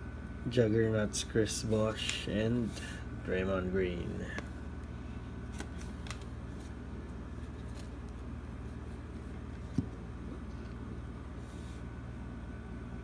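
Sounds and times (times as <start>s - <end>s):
steady low hum: 0.0s - 13.0s
trading cards sliding and clicking: 5.5s - 6.8s, 7.4s - 10.8s.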